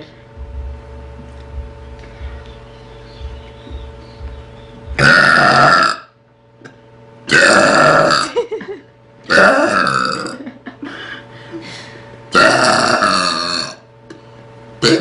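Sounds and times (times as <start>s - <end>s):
woman burping loudly: 5.0s - 6.2s, 7.3s - 8.5s, 9.3s - 10.6s, 12.3s - 13.8s.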